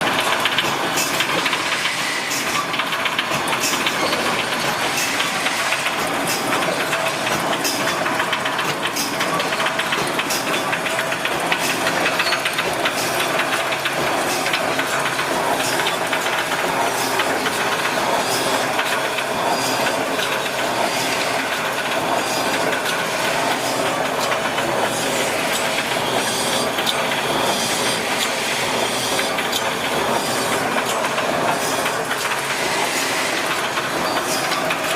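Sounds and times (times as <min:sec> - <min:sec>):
sharp machine clack: 0:00.0 - 0:34.9
welding machine clatter and hiss: 0:00.0 - 0:34.9.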